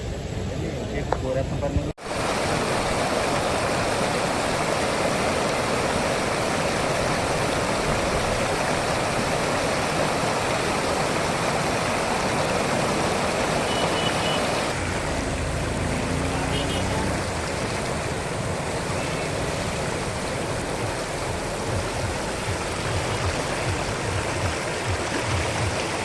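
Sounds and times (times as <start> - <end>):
floodwater rushing: 2.0 - 26.0.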